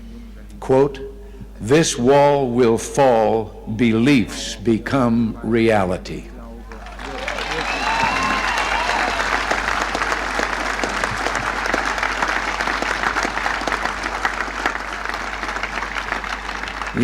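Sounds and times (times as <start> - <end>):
crowd applauding: 6.6 - 17.0.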